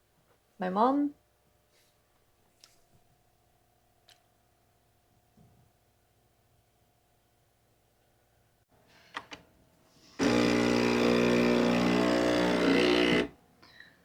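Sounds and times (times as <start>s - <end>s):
coffee machine mechanical hum: 10.2s - 13.3s.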